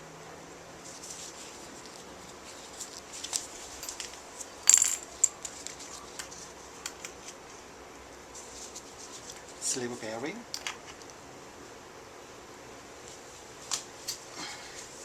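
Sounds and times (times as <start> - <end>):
small metal parts clinking: 3.2 - 7.3, 10.5 - 11.1.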